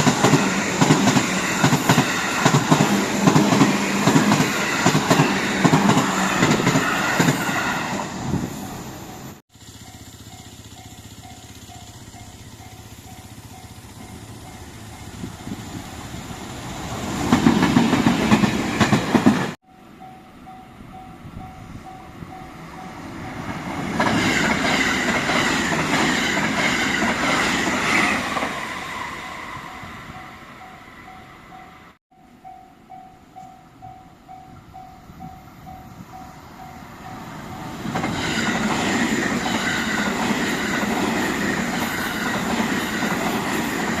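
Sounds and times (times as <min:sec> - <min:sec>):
train wheels clattering: 0:00.0 - 0:08.0, 0:09.7 - 0:19.6, 0:23.0 - 0:29.1, 0:37.2 - 0:44.0
train high-pitched tone: 0:00.0 - 0:44.0
level-crossing bell dinging: 0:09.0 - 0:15.4, 0:19.6 - 0:23.6, 0:29.6 - 0:37.8.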